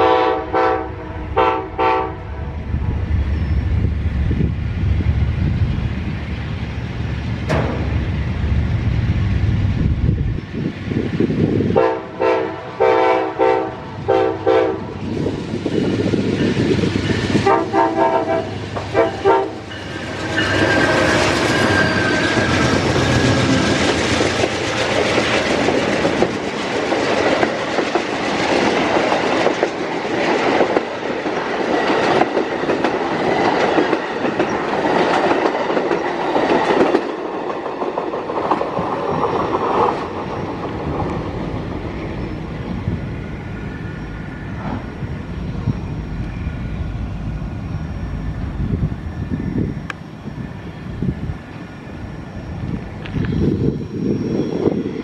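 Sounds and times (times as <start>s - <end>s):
train horn short blasts: 0.0s - 2.5s, 11.8s - 14.9s, 17.4s - 19.7s
train wheels clacking over rails: 6.8s - 42.4s.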